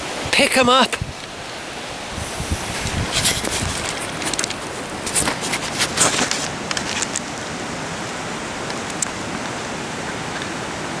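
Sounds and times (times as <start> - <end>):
wind on microphone: 0.0 - 10.3
rustles and clicks: 2.8 - 7.5.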